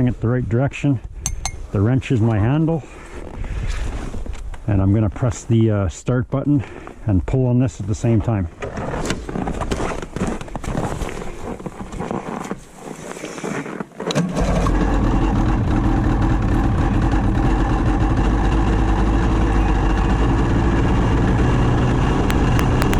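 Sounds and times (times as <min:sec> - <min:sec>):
knocking and clatter: 0:22.3 - 0:22.9
snowmobile engine running: 0:22.3 - 0:22.9.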